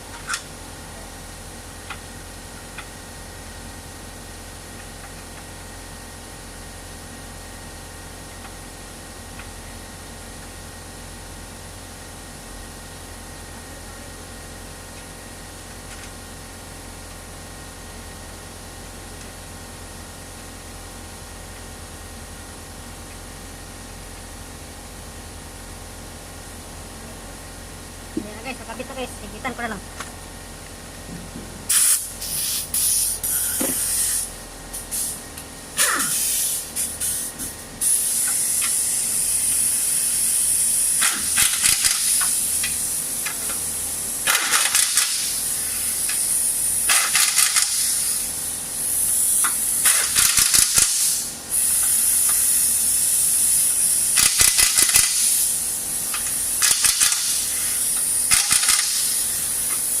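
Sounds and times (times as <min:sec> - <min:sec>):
air hissing: 0:31.6 - 0:35.2, 0:35.8 - 1:00.0
pneumatic wrench rattling: 0:31.7 - 0:35.2, 0:35.8 - 1:00.0.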